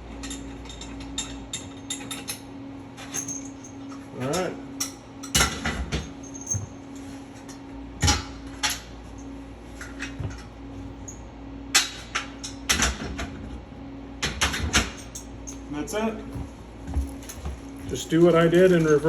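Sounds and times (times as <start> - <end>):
steady low hum: 0.0 - 19.0
hand tools clinking and knocking: 17.0 - 19.0.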